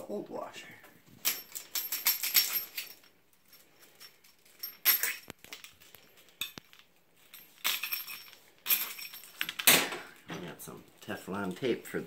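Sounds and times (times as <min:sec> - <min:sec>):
rustling: 0:00.9 - 0:12.0
metal hardware clinking: 0:01.2 - 0:10.5.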